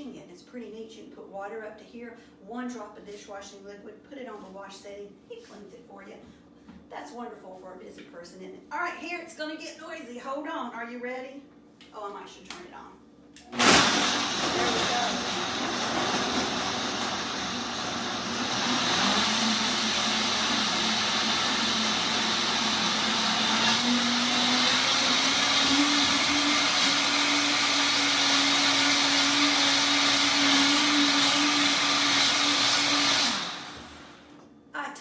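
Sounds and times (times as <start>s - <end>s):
blender motor running: 13.5s - 34.4s.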